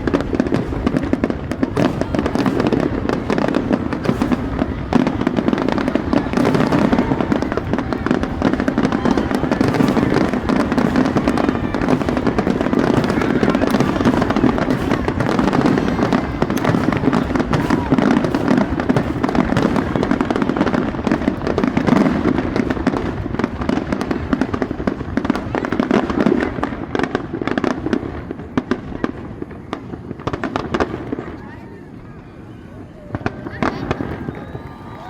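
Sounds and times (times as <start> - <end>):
fireworks bangs and crackles: 0.0 - 35.0.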